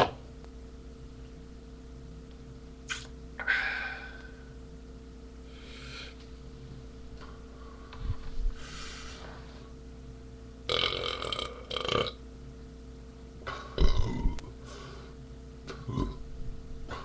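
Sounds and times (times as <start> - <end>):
man breathing hard and sniffing: 5.4 - 6.2, 8.5 - 9.8, 14.6 - 15.2.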